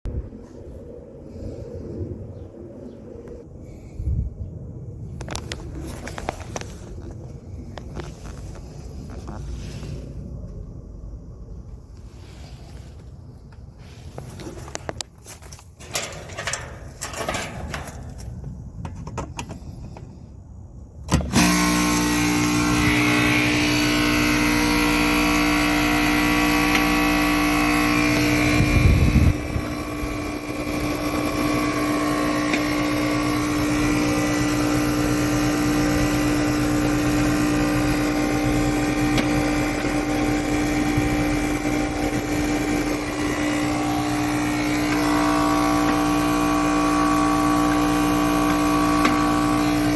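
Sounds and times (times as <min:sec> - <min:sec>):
compressor motor humming: 0:11.6 - 0:18.7, 0:20.9 - 0:49.9.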